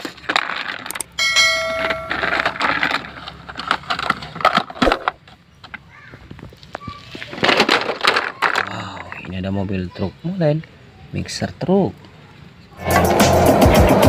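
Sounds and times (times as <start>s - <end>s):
plastic toys rustling and knocking: 0.0s - 1.2s, 1.9s - 9.4s.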